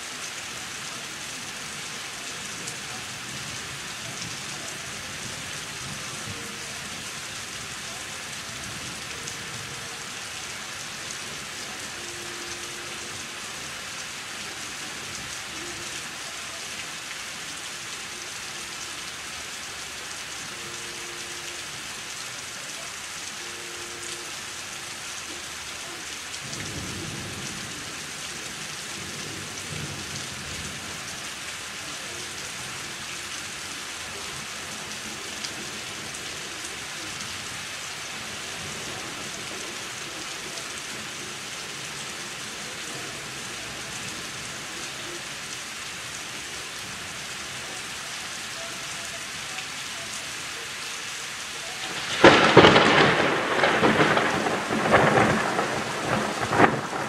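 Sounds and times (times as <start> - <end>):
heavy rain falling: 0.0 - 57.0
thunder rumbling: 51.8 - 57.0.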